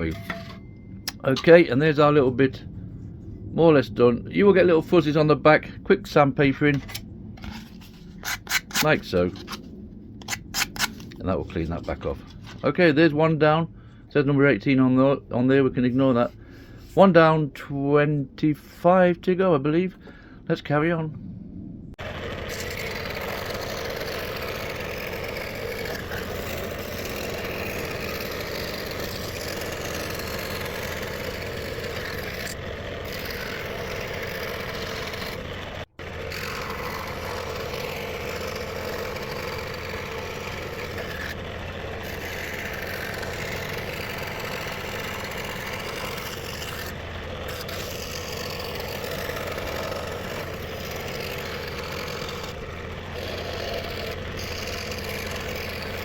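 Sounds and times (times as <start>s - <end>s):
scroll saw cutting plywood: 0.0s - 2.2s, 6.6s - 12.7s, 22.0s - 56.0s.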